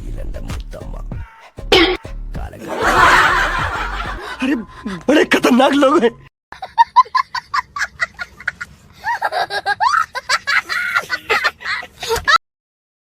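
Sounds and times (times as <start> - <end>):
high-pitched cackling: 2.7 - 4.6.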